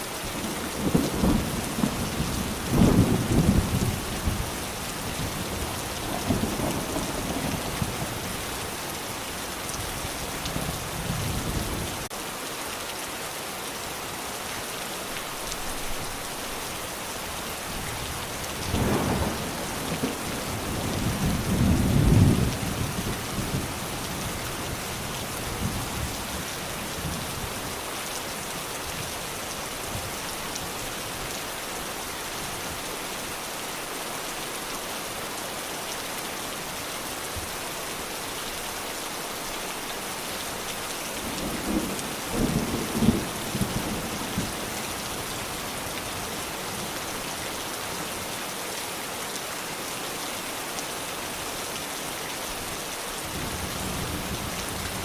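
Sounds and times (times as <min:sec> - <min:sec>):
steady rain falling: 0:00.0 - 0:55.0
low rolls of thunder: 0:18.7 - 0:23.7.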